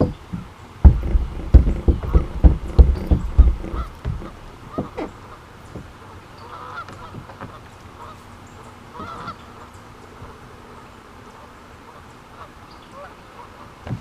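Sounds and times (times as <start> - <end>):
low steady background noise: 0.0 - 14.0
honking bird calls: 1.0 - 5.4.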